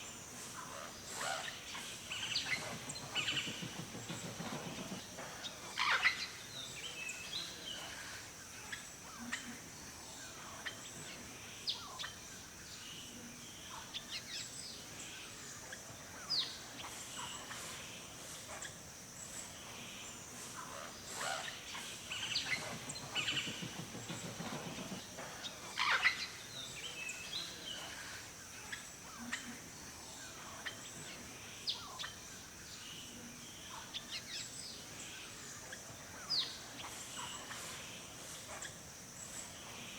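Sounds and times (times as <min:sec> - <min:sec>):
high-pitched hiss: 0:00.0 - 0:39.9.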